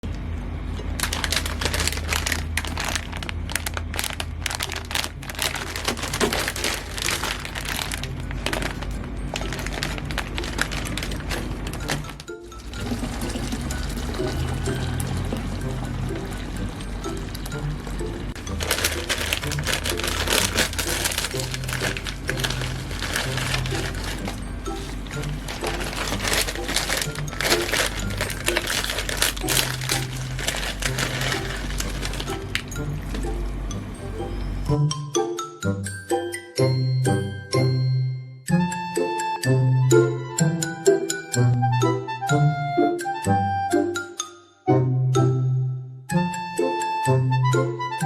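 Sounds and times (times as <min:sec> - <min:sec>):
background music with low notes: 0:00.1 - 0:48.0
plastic packaging crinkling: 0:00.7 - 0:33.6.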